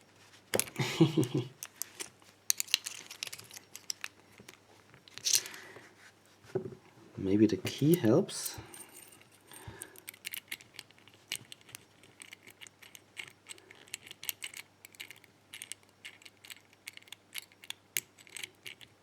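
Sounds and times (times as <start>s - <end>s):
metallic clicks in a padlock: 9.8s - 19.0s.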